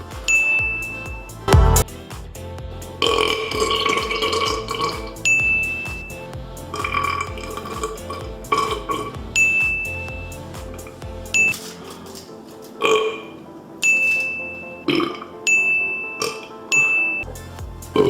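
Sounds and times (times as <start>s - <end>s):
music with repeating beat: 0.0s - 12.2s, 17.2s - 18.0s.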